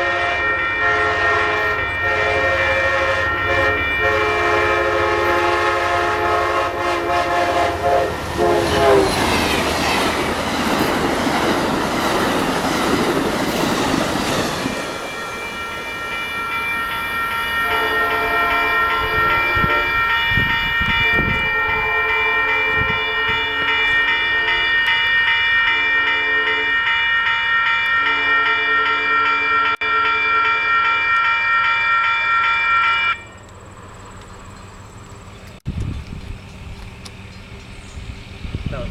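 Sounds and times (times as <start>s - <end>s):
train horn chord: 0.0s - 9.4s, 14.6s - 33.2s
train rushing past: 0.0s - 38.9s
steady high tones: 9.1s - 34.1s.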